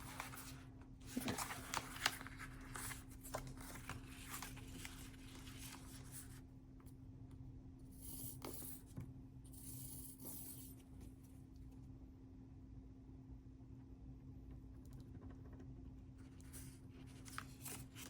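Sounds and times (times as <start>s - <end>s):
paper rustling and scraping: 0.0s - 6.4s, 16.5s - 18.0s
low steady hum: 0.0s - 18.0s.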